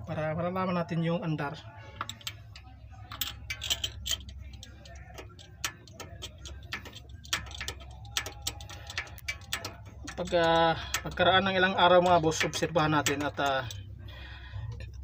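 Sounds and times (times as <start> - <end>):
low steady hum: 0.0 - 15.0
ratchet wrench clicking: 2.0 - 2.4, 3.1 - 13.9.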